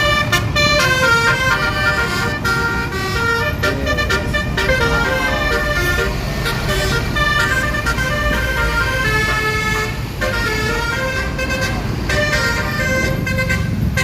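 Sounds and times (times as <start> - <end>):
bus horns playing notes: 0.0 - 14.0
low rumble of buses: 0.0 - 14.0.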